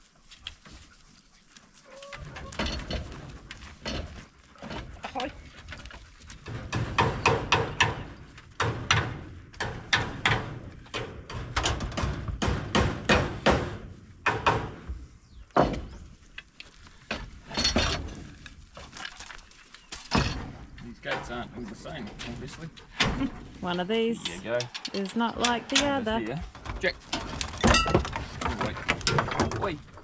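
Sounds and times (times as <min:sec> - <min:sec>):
hammering knocks: 0:06.4 - 0:15.0.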